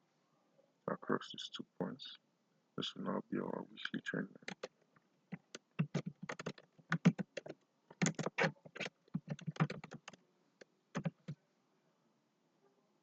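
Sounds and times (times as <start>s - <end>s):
computer keyboard typing: 4.4s - 4.7s, 5.3s - 10.2s, 11.0s - 11.4s.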